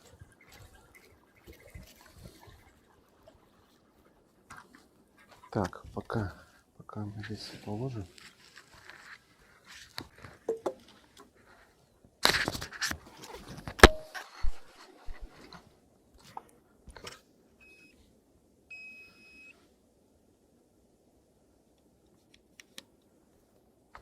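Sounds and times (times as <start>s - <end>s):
sharp click: 13.7s - 14.6s.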